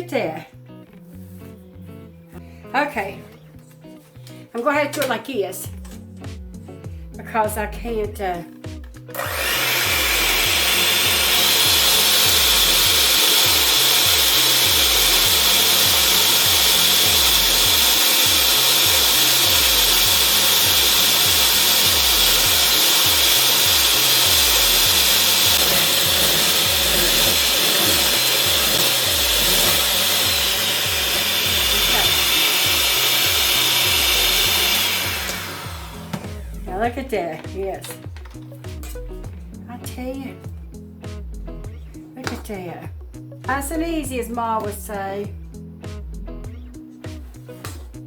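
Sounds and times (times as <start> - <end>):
electric mixer whining: 9.1 - 36.7.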